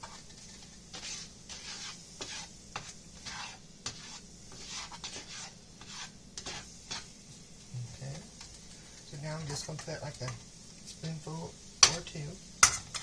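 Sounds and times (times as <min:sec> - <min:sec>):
spatula scraping frying pan: 0:00.0 - 0:07.4
light sizzle: 0:00.0 - 0:13.0.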